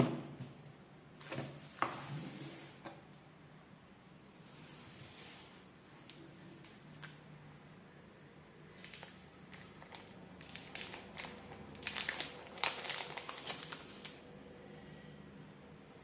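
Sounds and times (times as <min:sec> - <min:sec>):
crinkling handling noise: 0:06.0 - 0:14.3.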